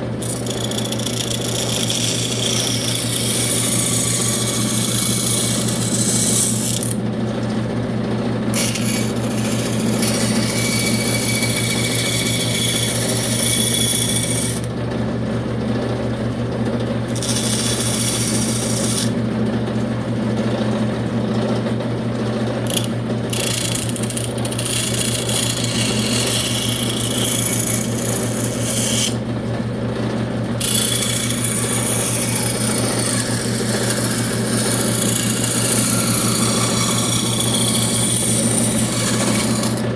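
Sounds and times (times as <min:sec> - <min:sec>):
power tool motor humming: 0:00.0 - 0:07.0, 0:08.5 - 0:14.7, 0:17.1 - 0:19.2, 0:22.6 - 0:29.2, 0:30.6 - 0:39.9
abrasive grinding on wood: 0:00.2 - 0:07.0, 0:08.6 - 0:14.7, 0:17.1 - 0:19.2, 0:22.7 - 0:29.2, 0:30.6 - 0:39.9.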